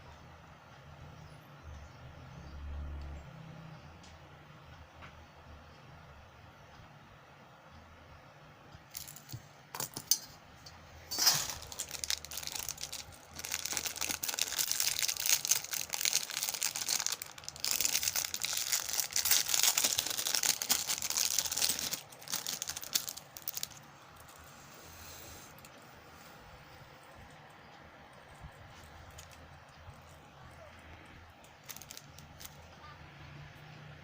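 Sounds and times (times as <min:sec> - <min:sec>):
plastic packaging crinkling: 0:08.9 - 0:10.2, 0:11.1 - 0:24.4, 0:28.6 - 0:30.7, 0:31.4 - 0:32.7.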